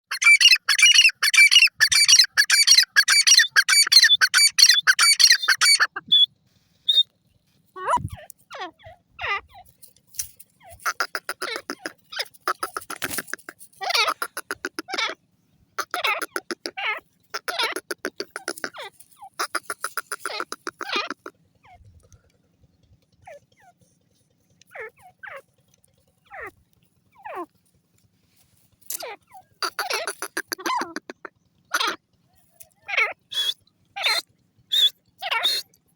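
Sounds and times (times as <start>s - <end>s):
francolin calling: 0.1s - 6.3s, 10.6s - 15.2s, 15.8s - 21.8s, 28.9s - 32.0s, 32.6s - 35.7s
short bird whistles: 6.0s - 7.1s, 33.3s - 33.6s, 34.7s - 35.6s.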